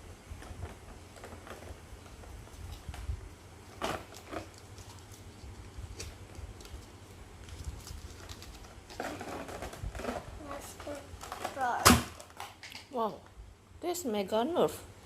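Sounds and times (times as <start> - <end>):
toy blaster clicks and knocks: 8.2 - 12.8.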